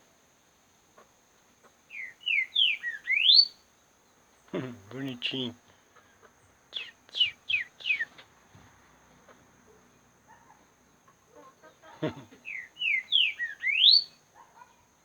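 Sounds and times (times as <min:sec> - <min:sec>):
songbird chirps and whistles: 0:01.9 - 0:03.6, 0:06.7 - 0:08.3, 0:12.4 - 0:14.2.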